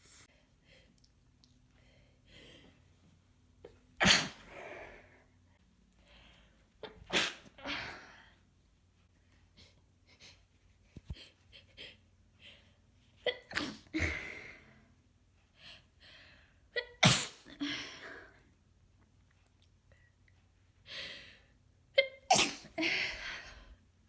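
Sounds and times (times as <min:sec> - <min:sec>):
woman sneezing: 0:04.0 - 0:04.5, 0:17.0 - 0:17.6, 0:22.3 - 0:23.2.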